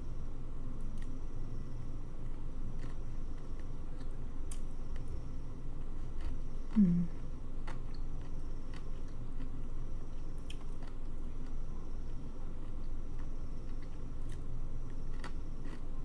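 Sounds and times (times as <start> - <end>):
person chewing food: 2.3 - 5.1, 5.8 - 6.8, 7.6 - 11.6, 12.6 - 16.0
low voice hum: 6.7 - 7.4.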